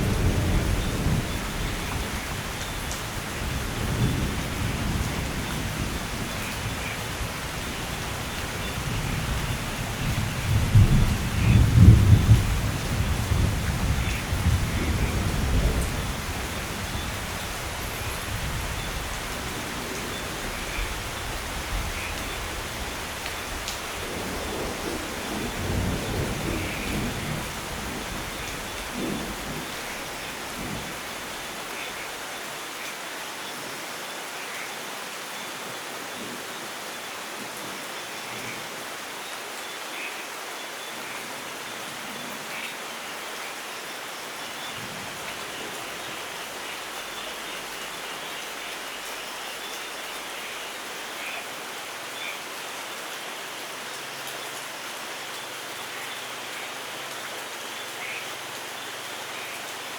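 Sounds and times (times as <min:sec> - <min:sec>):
distant thunder rolling: 0:00.0 - 0:06.9, 0:08.6 - 0:31.0
steady rain: 0:00.0 - 0:59.9.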